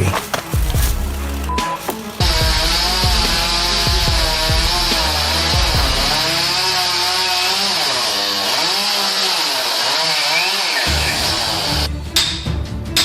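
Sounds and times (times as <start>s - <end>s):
chainsaw revving through a cut: 2.2s - 11.9s.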